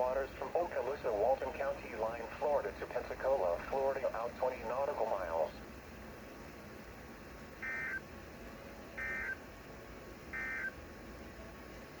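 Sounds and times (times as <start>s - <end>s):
digital data tone bursts: 7.6s - 8.0s, 10.4s - 10.7s.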